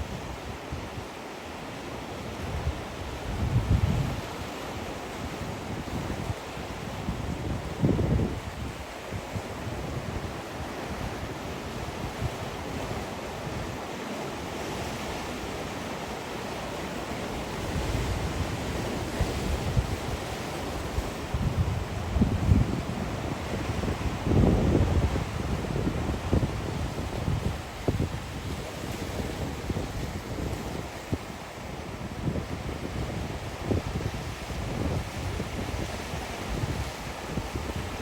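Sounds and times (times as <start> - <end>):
sea waves washing ashore: 0.0 - 38.0
wind buffeting microphone: 2.4 - 4.4, 5.1 - 12.7, 17.6 - 38.0.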